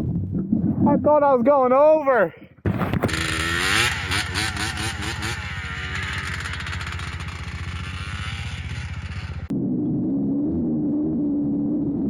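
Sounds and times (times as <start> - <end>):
two-stroke engine revving: 2.7 - 9.5.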